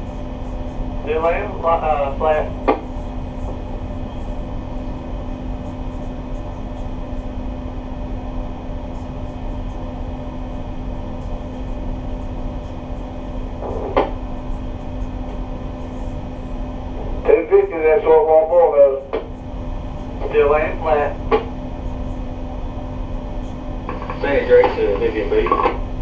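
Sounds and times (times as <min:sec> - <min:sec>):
diesel engines droning: 0:00.0 - 0:05.0, 0:13.5 - 0:26.0.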